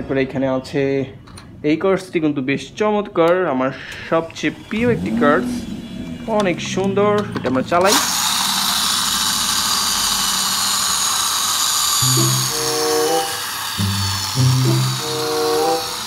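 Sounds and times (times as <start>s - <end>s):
toy car motor whirring: 7.7s - 16.0s
simple electronic tune: 12.0s - 16.0s.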